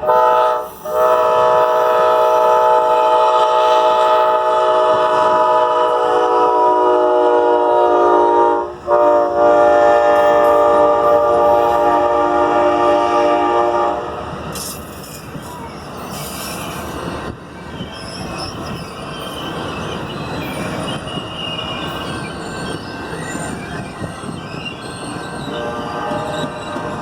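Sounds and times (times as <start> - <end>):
train wheels rumbling on rails: 0.0 - 27.0
high-pitched wheel squeal: 14.6 - 27.0.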